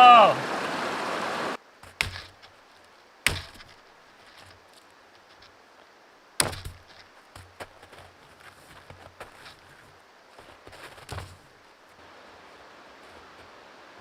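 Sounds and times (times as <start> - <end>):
knocks on wood: 1.8 - 2.4, 3.3 - 3.8.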